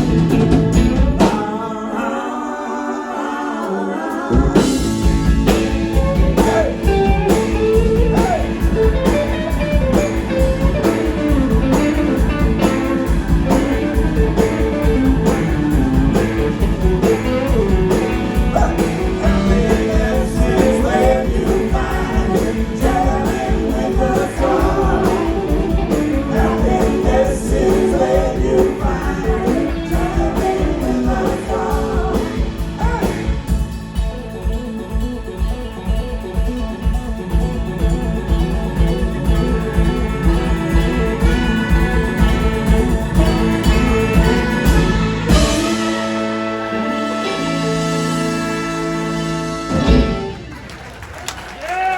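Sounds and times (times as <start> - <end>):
drums beat: 0.0 - 1.6, 4.3 - 50.8
electric guitar: 0.0 - 1.6, 4.5 - 50.7
person singing: 6.0 - 9.0, 17.0 - 33.4.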